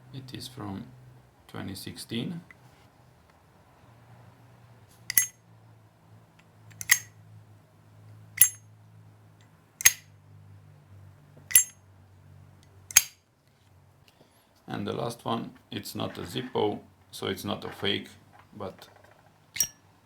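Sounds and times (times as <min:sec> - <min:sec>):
lighter lid clicking: 0:05.1 - 0:05.3, 0:06.8 - 0:07.1, 0:08.4 - 0:08.6, 0:09.8 - 0:10.0, 0:12.9 - 0:13.1.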